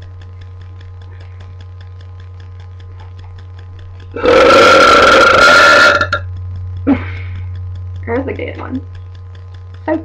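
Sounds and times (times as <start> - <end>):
faint regular ticking: 0.0 - 10.0
steady low hum: 0.0 - 10.0
woman burping loudly: 4.2 - 6.2.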